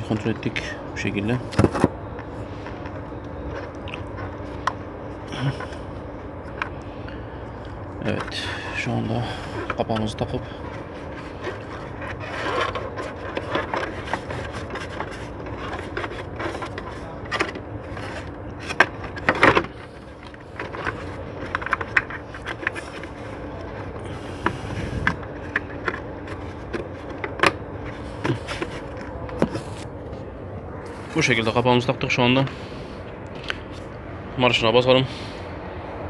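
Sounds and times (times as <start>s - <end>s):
steady low hum: 0.0s - 36.0s
plastic cover scraping: 9.6s - 29.9s.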